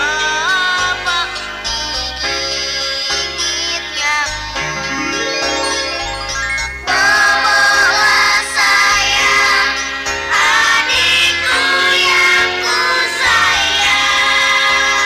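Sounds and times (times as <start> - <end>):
song with high sung melody: 0.4 - 15.0.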